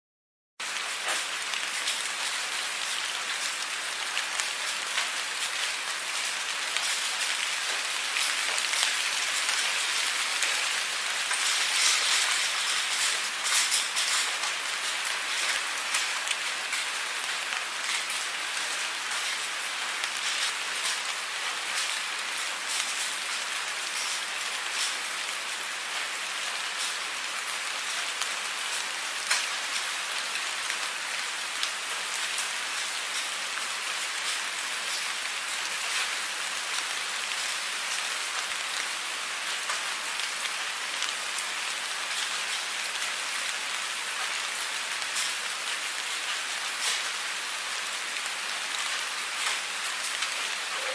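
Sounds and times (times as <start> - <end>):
raindrops ticking on a surface: 0.6 - 50.9
steady rain falling: 0.6 - 50.9.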